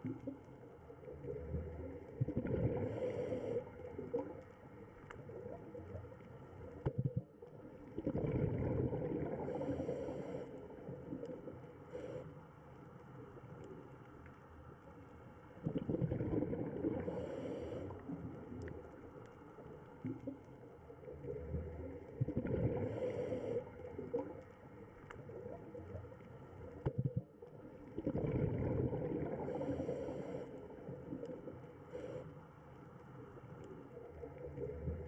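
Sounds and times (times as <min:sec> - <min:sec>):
gurgling exhaled bubbles: 0:01.0 - 0:04.5, 0:06.9 - 0:10.3, 0:15.6 - 0:19.0, 0:21.0 - 0:24.5, 0:26.7 - 0:30.3.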